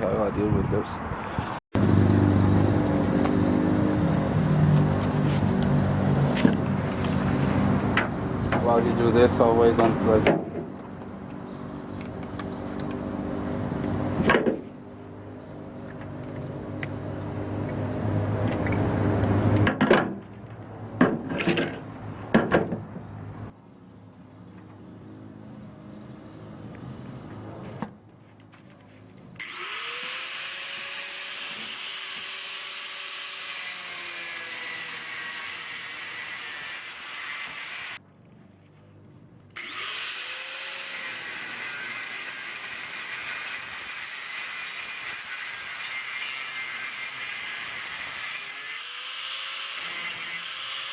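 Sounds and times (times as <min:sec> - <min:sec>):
power tool cutting metal: 0:29.4 - 0:38.0, 0:39.6 - 0:50.9.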